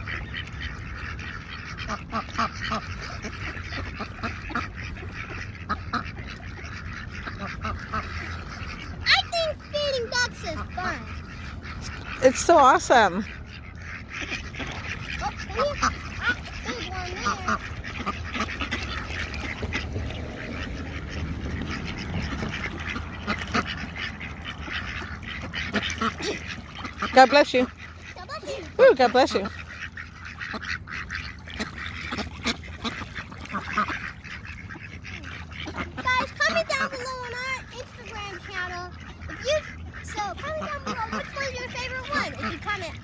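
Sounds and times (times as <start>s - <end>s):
steady low rumble: 0.0s - 28.8s
ducks quacking: 0.0s - 43.0s.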